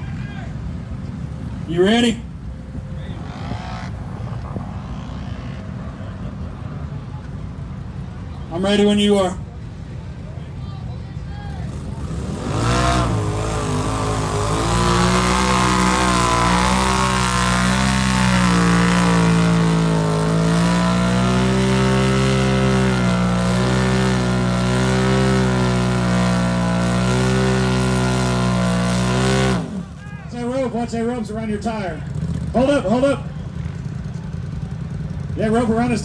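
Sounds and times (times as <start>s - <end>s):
atv engine at high revs: 3.0s - 5.7s, 11.5s - 30.0s, 32.0s - 33.2s.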